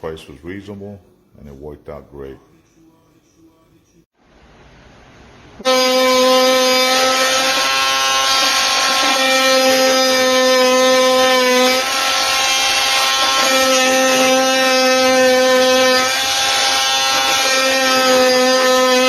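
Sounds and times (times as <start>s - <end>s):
oscillating multi-tool buzzing: 5.6s - 19.0s.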